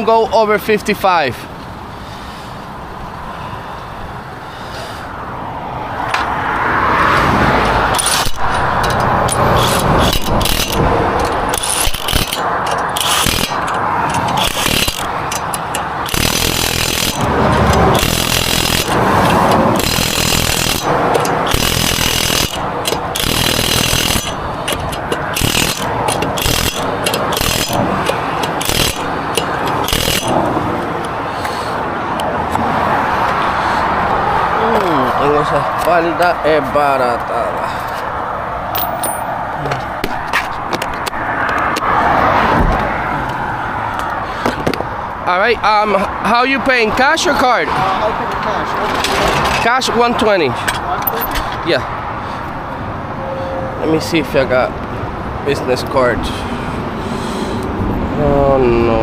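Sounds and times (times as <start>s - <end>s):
impact wrench hammering: 7.9s - 30.6s, 38.8s - 39.3s.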